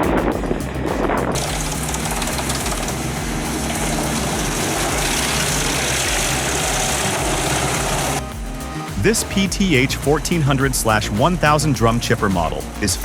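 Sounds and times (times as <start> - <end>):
low engine drone: 0.0 - 11.7
shredding machine grinding: 1.4 - 8.2.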